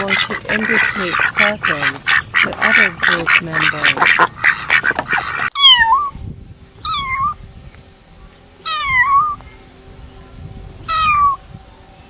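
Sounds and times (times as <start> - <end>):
cat meowing: 5.5 - 6.1, 6.8 - 7.4, 8.7 - 9.4, 10.9 - 11.4.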